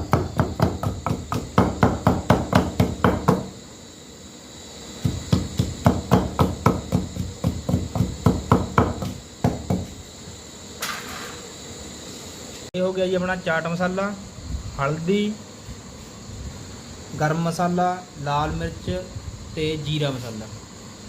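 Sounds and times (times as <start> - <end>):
pestle pounding in mortar: 0.0 - 3.6, 5.0 - 10.0.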